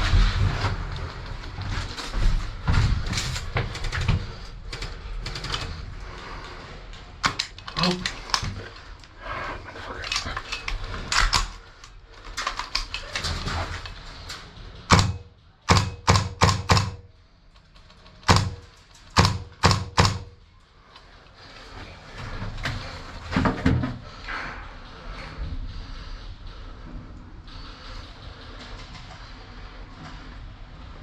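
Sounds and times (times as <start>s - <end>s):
airsoft gun shots: 14.9s - 17.0s, 18.3s - 18.6s, 19.2s - 20.3s.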